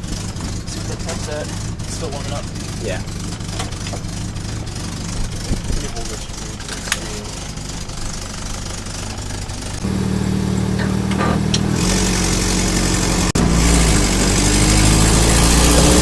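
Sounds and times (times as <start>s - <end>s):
jeep engine running: 0.0s - 16.0s.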